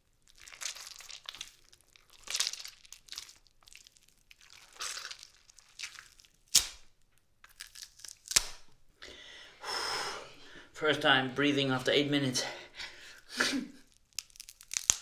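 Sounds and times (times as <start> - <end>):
squash flesh crunching and tearing: 0.0 - 8.9, 13.1 - 15.0.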